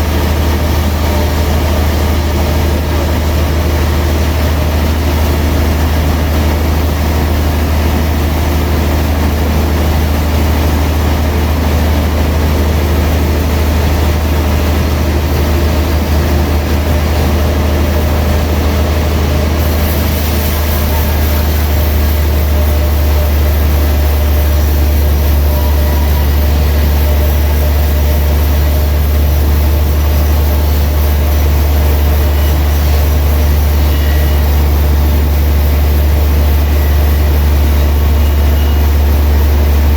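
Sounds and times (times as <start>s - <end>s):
sawmill machinery deep hum: 0.0s - 39.9s
hiss of cutting: 19.6s - 39.6s.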